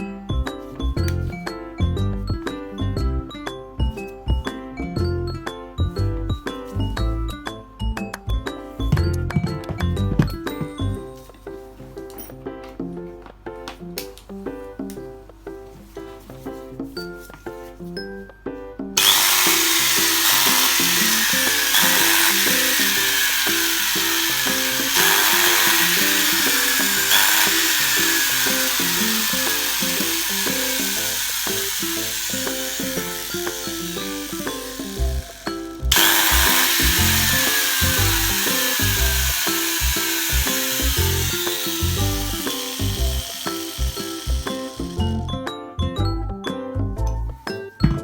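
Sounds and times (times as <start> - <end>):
plucked melody background music: 0.0 - 48.0
power tool motor whirring: 19.0 - 45.3.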